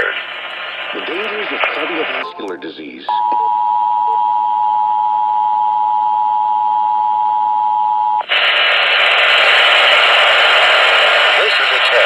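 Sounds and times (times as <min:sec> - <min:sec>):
radio static hiss: 0:00.0 - 0:04.2, 0:08.2 - 0:12.0
two-tone alert signal: 0:03.1 - 0:05.1.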